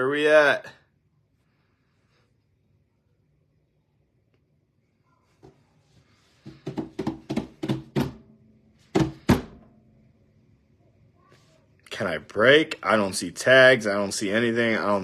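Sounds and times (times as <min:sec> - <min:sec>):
knocks on hard surface: 0:06.4 - 0:08.2, 0:08.9 - 0:09.6.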